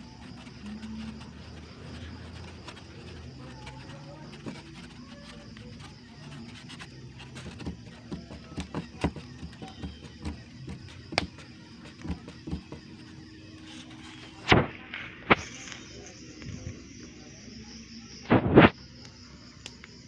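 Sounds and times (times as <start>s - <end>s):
utensils clicking and tapping: 0.0s - 14.5s.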